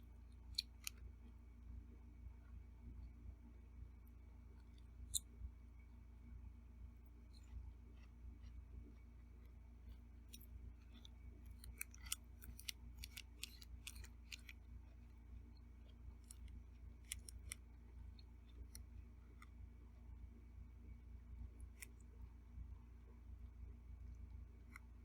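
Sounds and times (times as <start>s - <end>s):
eating clicks and ticks: 0.4s - 1.0s, 7.3s - 19.6s.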